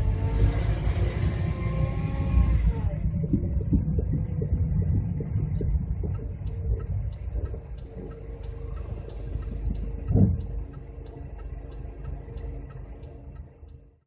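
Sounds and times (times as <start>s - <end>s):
car road rumble inside: 0.0s - 14.0s
evenly spaced ticking: 3.3s - 14.0s.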